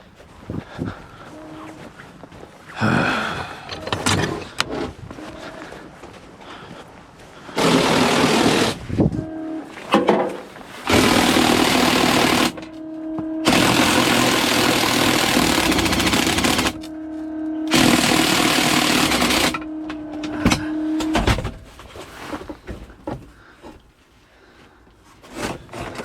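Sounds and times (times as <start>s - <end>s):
power tool rattling: 7.6s - 9.3s, 9.9s - 21.7s.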